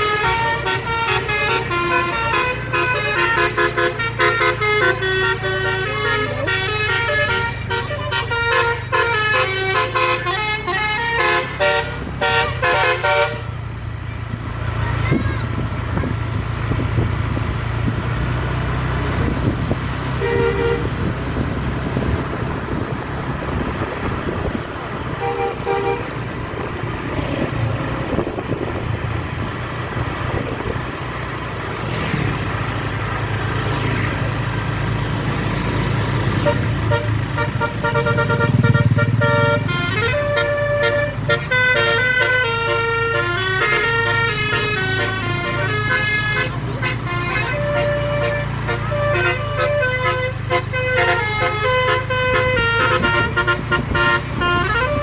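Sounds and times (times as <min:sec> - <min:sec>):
musical air horn tune: 0:00.0 - 0:13.6, 0:20.2 - 0:21.1, 0:25.2 - 0:26.3, 0:36.4 - 0:55.0
bus engine and road rumble: 0:00.0 - 0:55.0.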